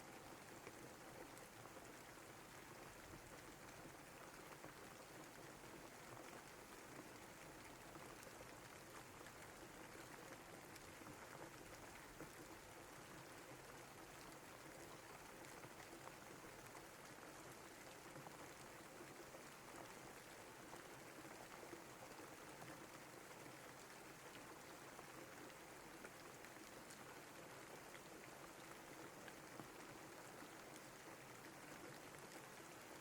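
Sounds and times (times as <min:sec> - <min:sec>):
faint steady rain: 0:00.0 - 0:33.0.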